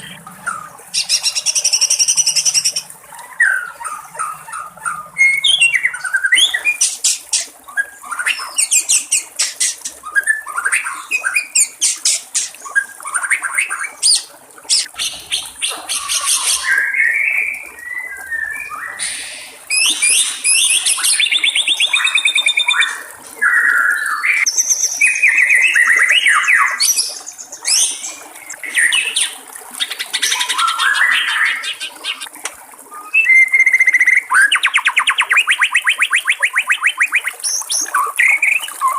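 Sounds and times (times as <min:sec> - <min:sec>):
faint trickling water: 0:00.0 - 0:38.9
songbird singing varied trills: 0:33.1 - 0:38.9.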